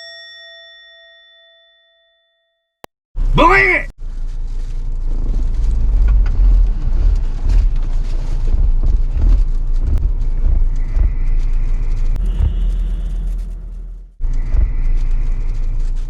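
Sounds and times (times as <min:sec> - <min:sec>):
wind buffeting microphone: 0:05.9 - 0:13.2.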